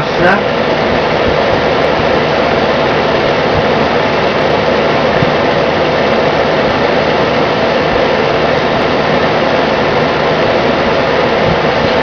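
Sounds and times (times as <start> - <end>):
fan heater blower whoosh: 0.0 - 12.0
low hum: 0.0 - 12.0.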